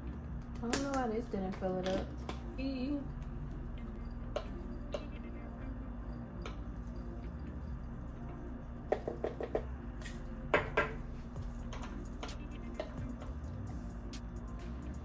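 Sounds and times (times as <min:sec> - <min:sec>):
jars and lids clicking: 0:08.9 - 0:13.1.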